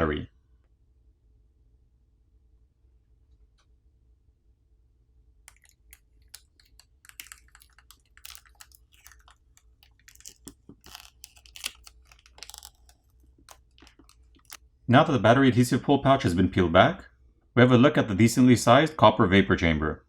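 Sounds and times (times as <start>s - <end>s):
plastic film crinkling: 5.5s - 14.6s.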